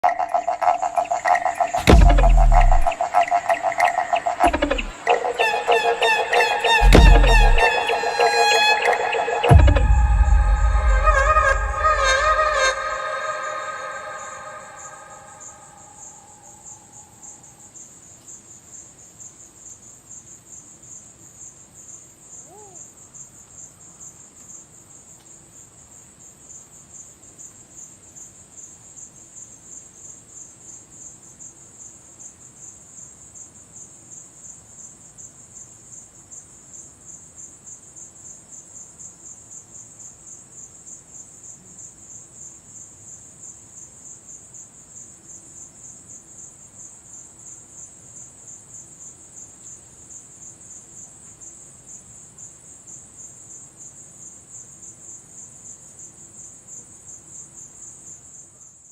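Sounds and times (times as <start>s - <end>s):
crickets trilling: 0.0s - 58.4s
music: 1.0s - 15.0s
faint short chirp: 4.3s - 15.6s.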